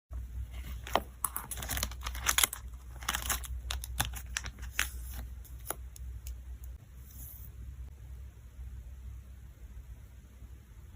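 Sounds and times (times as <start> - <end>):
plastic sleeves crinkling: 0.6 - 5.8.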